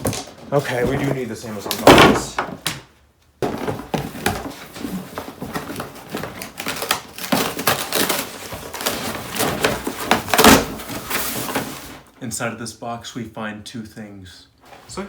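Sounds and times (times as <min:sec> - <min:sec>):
cardboard rustling and scraping: 0:00.0 - 0:02.6, 0:03.4 - 0:12.1.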